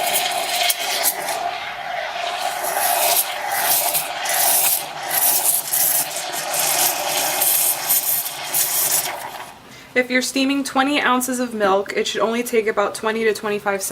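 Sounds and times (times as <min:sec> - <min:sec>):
steam wand hissing: 0:00.0 - 0:09.6.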